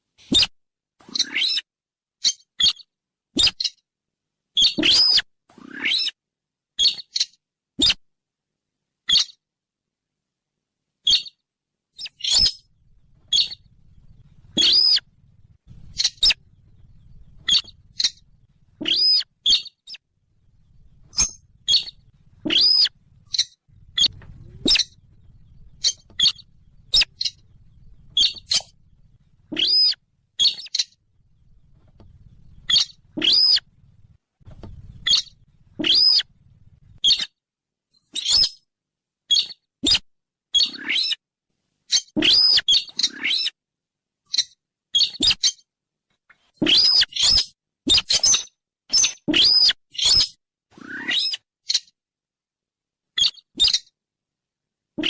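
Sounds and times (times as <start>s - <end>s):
faint low hum: 12.5s - 37.1s
short sharp high bird calls: 13.3s - 13.6s, 14.5s - 15.0s, 15.7s - 20.0s, 20.6s - 28.8s, 29.5s - 31.0s, 32.5s - 33.6s, 35.0s - 36.3s, 41.9s - 43.5s, 46.6s - 51.9s.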